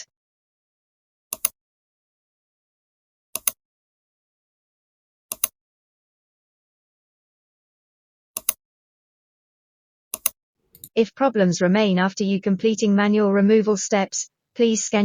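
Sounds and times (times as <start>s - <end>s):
computer mouse double clicks: 3.4s - 3.6s, 5.3s - 5.5s, 10.2s - 10.9s.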